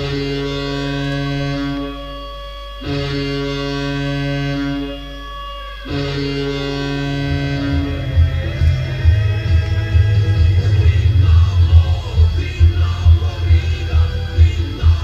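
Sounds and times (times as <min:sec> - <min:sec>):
goal horn blasts: 0:00.0 - 0:12.0
goal song beat: 0:05.8 - 0:15.0.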